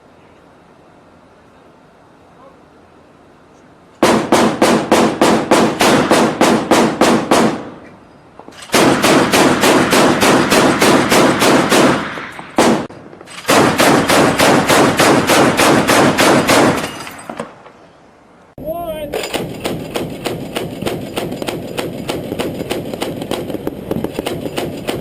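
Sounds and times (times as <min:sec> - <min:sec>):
chain gun automatic fire: 0:08.5 - 0:17.4, 0:19.2 - 0:25.0.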